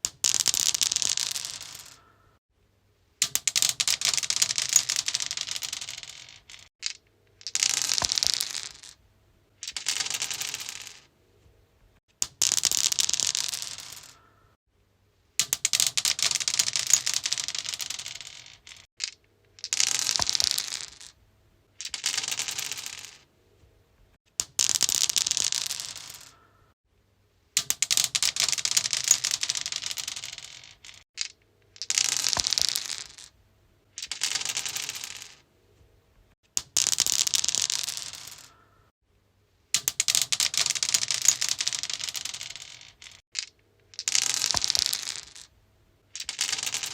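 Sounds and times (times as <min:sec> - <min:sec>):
dice clattering on stone: 0:00.1 - 0:02.1, 0:03.2 - 0:09.0, 0:09.6 - 0:11.1, 0:12.2 - 0:14.2, 0:15.4 - 0:21.2, 0:21.8 - 0:23.3, 0:24.4 - 0:26.4, 0:27.6 - 0:35.4, 0:36.6 - 0:38.6, 0:39.7 - 0:45.5, 0:46.1 - 0:46.9.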